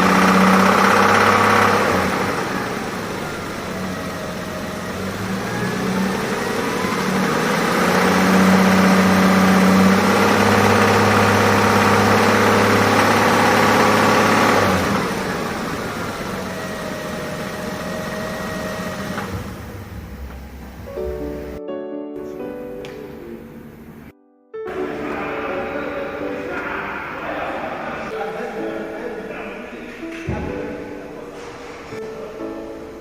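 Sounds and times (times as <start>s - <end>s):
car engine revving and idling: 0.0s - 21.6s.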